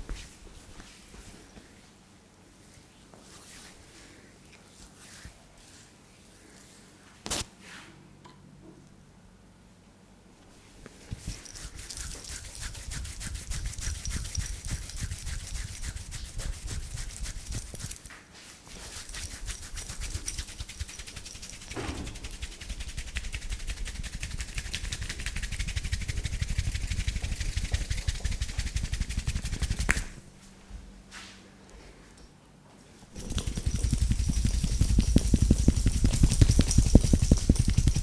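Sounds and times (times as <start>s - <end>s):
hands slapping during head massage: 18.9s - 30.2s, 33.2s - 38.0s.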